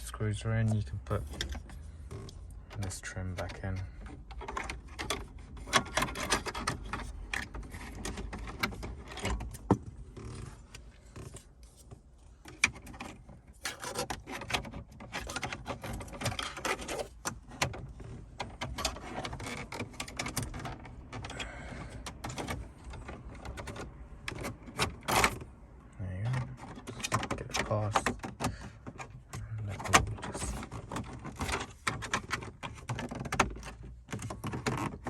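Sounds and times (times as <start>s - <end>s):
plastic scraping on plastic: 0.6s - 35.0s.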